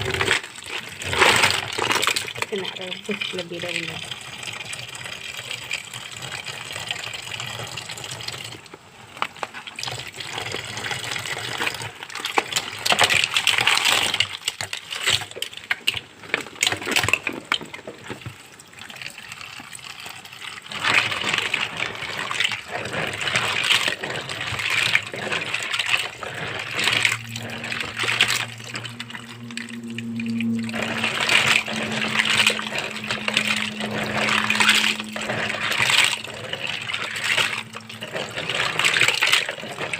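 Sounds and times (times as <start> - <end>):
water running and splashing: 0.0 - 39.9
low steady hum: 19.8 - 39.9.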